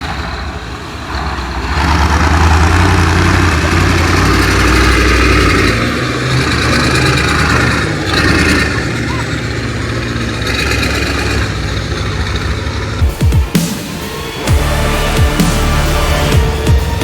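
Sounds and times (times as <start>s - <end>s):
truck engine rumbling: 0.0s - 17.0s.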